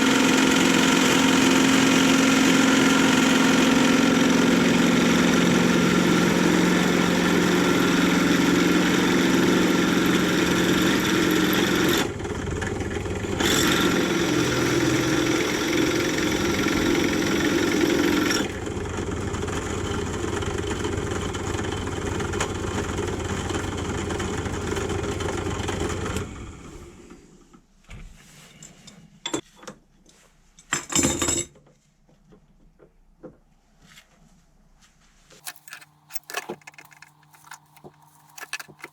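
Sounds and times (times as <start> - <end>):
power tool motor running: 0.0 - 26.6
light clinks and knocks: 35.4 - 38.9.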